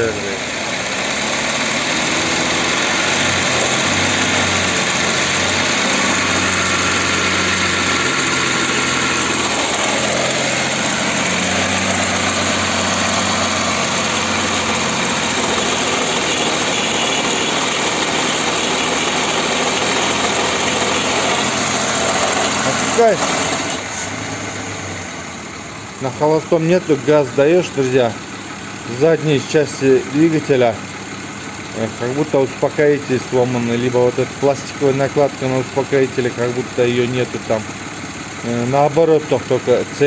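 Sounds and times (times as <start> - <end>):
car engine running: 0.0 - 40.0.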